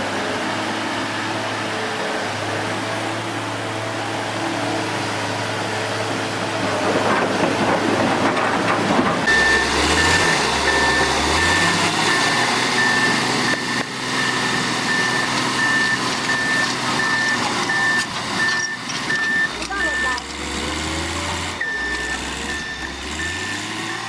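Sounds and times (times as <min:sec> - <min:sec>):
excavator engine running: 0:00.0 - 0:24.0
back-up alarm beeping: 0:09.3 - 0:20.3, 0:21.4 - 0:24.0.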